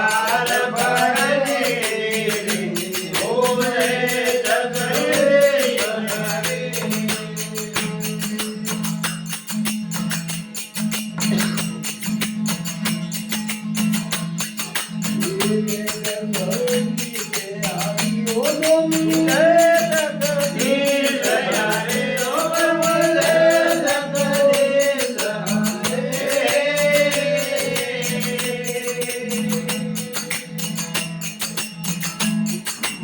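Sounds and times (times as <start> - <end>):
person singing a melody: 0.0 - 8.4, 15.2 - 31.0
jingling percussion: 0.0 - 33.0.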